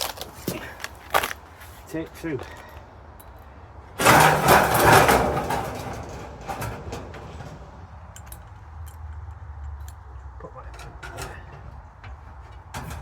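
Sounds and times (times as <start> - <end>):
power tool on steel panels: 4.0 - 8.7.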